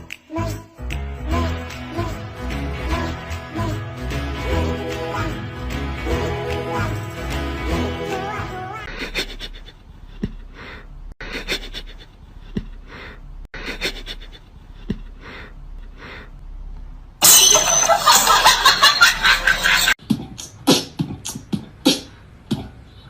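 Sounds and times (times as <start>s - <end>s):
heavy breathing: 8.9s - 16.4s.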